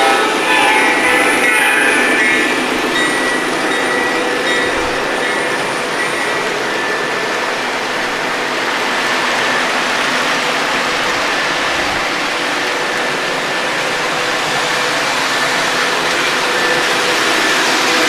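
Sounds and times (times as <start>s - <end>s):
faint steady tones: 0.0s - 18.0s
model train rolling on track: 0.0s - 18.0s.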